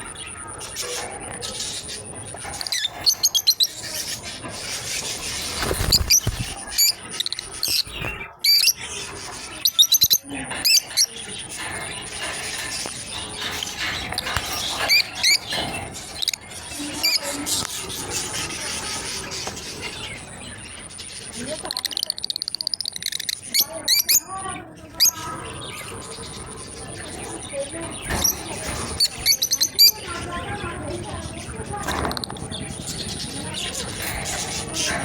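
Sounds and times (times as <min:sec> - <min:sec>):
lovebirds chirping: 0:00.0 - 0:35.0.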